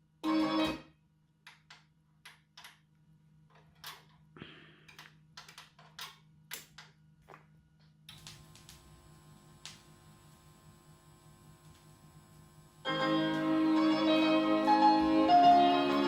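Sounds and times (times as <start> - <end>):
music: 0.0 - 1.0, 12.8 - 16.0
vinyl record clicks and pops: 8.1 - 10.8, 11.4 - 12.5.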